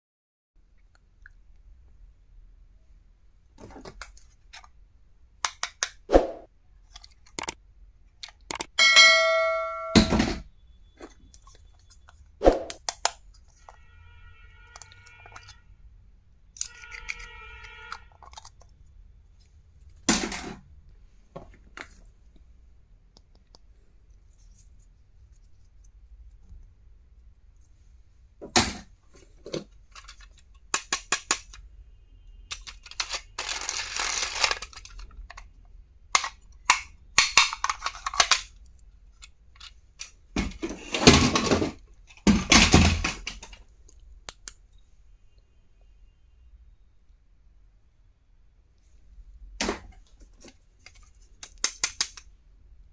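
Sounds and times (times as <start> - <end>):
plastic items clicking and tapping: 5.4 - 6.0, 6.8 - 7.6, 8.2 - 8.8, 14.7 - 15.6, 16.5 - 18.7, 28.4 - 31.6, 32.5 - 44.6, 49.6 - 52.3
packaging rustling: 32.7 - 35.2.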